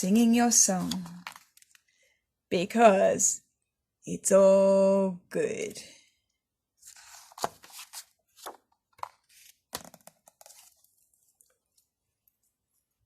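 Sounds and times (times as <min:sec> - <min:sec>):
rustling and handling noise: 0:00.6 - 0:01.9, 0:06.8 - 0:13.0.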